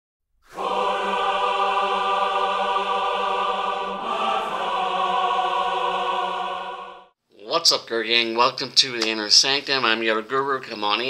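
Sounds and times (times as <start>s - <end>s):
choir holding chords: 0.5s - 7.2s.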